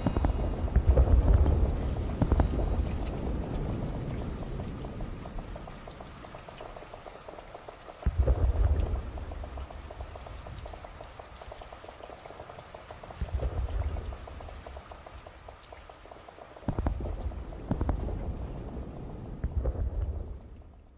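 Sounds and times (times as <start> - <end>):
deep distant booms: 0.0 - 4.1
steady rain hiss: 0.0 - 20.9.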